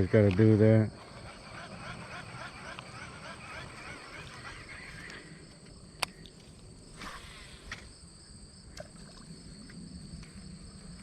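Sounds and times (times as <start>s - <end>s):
insects trilling: 0.0s - 11.0s.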